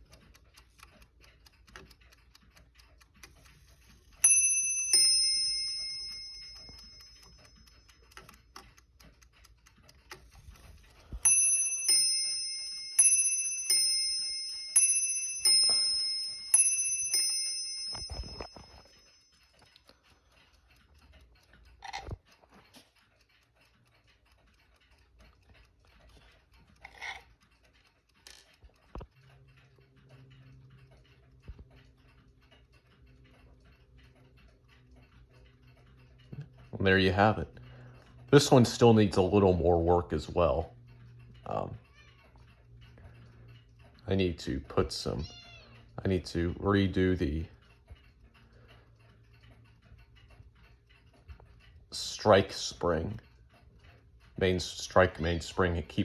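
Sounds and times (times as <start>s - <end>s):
clock ticking: 0.0s - 56.0s
mantel clock striking two bells: 4.2s - 7.4s, 11.2s - 19.2s.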